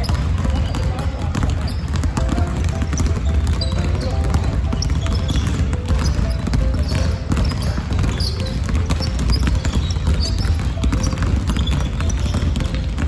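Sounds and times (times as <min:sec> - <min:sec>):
basketball bouncing: 0:00.0 - 0:13.0
music playing: 0:00.0 - 0:13.0.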